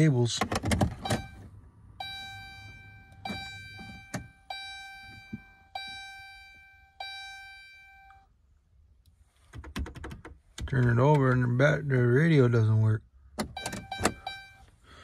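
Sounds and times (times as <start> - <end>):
vehicle warning chime dinging: 0.9 - 8.3, 13.4 - 14.7.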